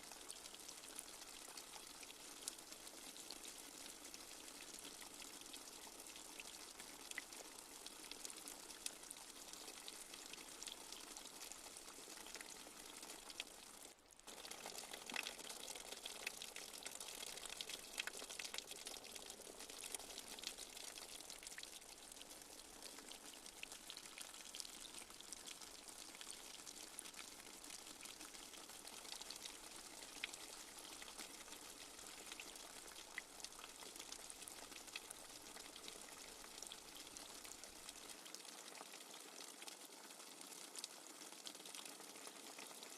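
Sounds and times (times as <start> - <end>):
light rain falling: 0.0 - 42.9.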